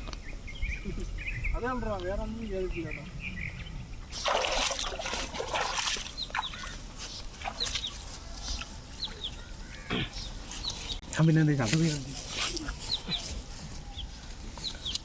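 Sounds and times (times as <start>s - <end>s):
water splashing and trickling: 4.0s - 9.6s.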